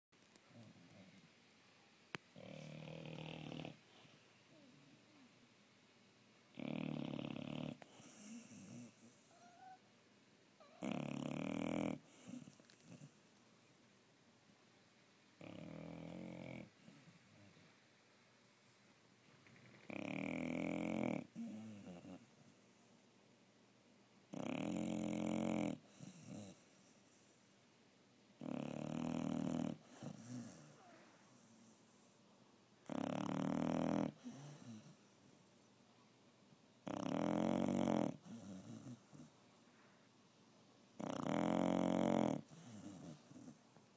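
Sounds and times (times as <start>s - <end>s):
dog snoring: 2.3s - 4.8s, 6.5s - 9.8s, 10.6s - 13.1s, 15.4s - 17.7s, 19.8s - 22.4s, 24.3s - 26.9s, 28.4s - 31.8s, 32.8s - 35.0s, 36.8s - 39.3s, 41.0s - 43.6s
soft dog breathing: 2.3s - 5.4s, 29.3s - 32.3s, 41.4s - 43.9s.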